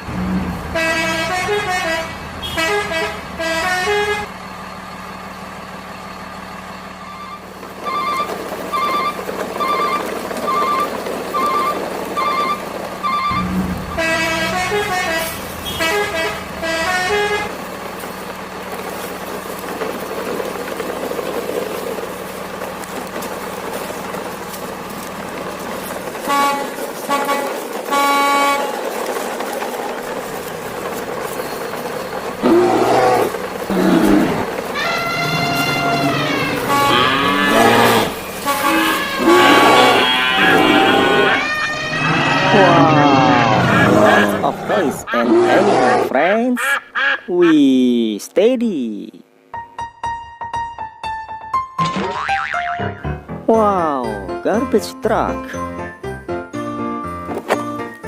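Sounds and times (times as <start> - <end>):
electronic beeps: 7.0 - 13.5
toy siren tones: 7.0 - 13.6
toy horn toots: 26.3 - 28.7, 34.8 - 42.6.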